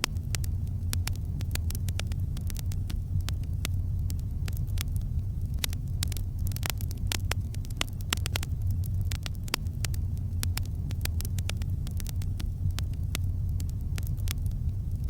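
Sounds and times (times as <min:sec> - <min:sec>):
campfire crackling: 0:00.0 - 0:15.0
sharp pops of fire: 0:00.0 - 0:15.0.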